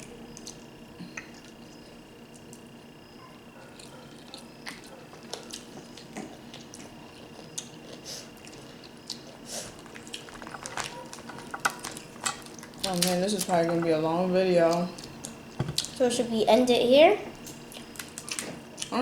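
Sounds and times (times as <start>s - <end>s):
chewing: 3.6s - 14.0s, 17.4s - 19.0s
small clicks and crackles: 9.8s - 14.0s.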